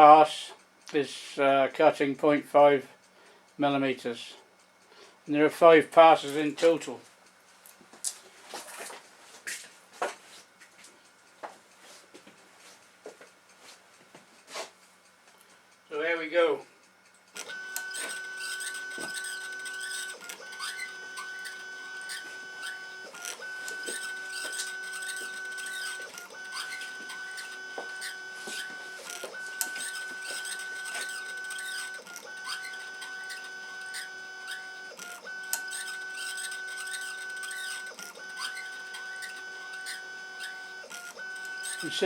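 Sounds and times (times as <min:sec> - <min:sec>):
stepper motors whining: 0:17.3 - 0:42.0.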